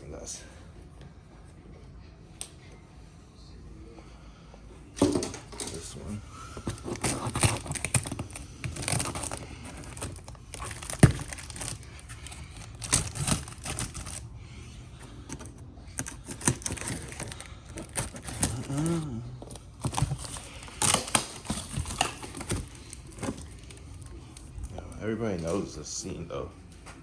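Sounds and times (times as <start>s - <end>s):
cardboard box torn open: 6.4s - 14.3s, 15.3s - 24.1s.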